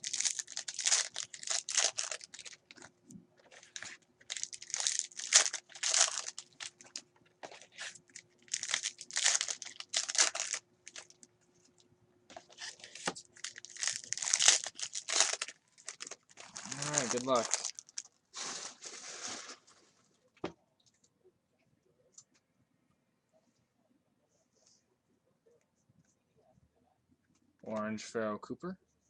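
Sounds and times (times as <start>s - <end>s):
foil wrappers tearing and crinkling: 0.0s - 2.9s, 3.5s - 7.0s, 7.6s - 11.2s, 12.6s - 19.7s.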